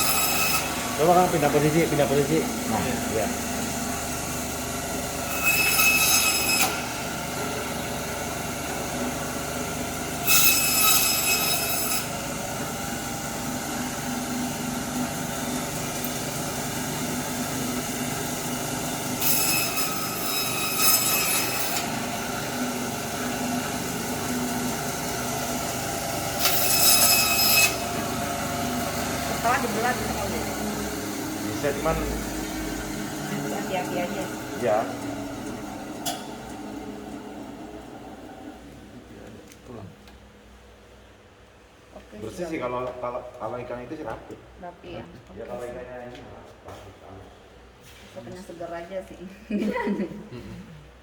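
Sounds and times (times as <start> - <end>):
band saw motor hum: 0.0 - 39.4.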